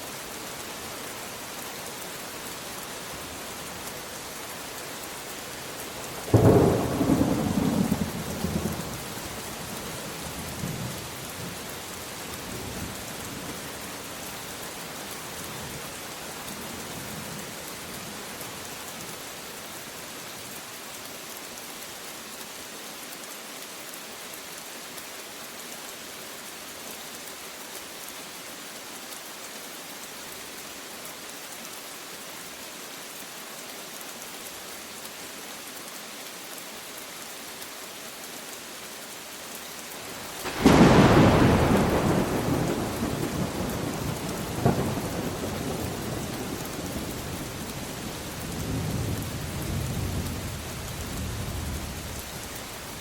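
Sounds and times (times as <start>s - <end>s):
steady rain falling: 0.0s - 53.0s
thunderclap rumbling: 40.5s - 47.2s.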